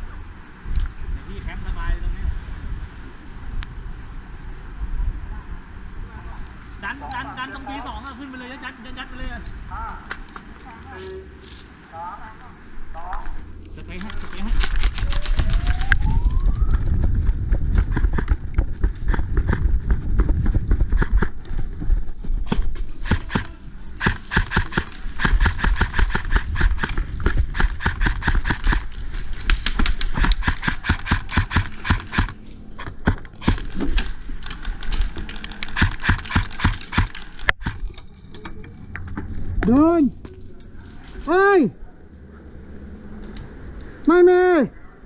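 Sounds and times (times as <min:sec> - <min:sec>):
wind rumble on microphone: 0:00.0 - 0:06.6, 0:12.8 - 0:36.6
airsoft guns firing: 0:22.5 - 0:34.1, 0:35.3 - 0:37.9.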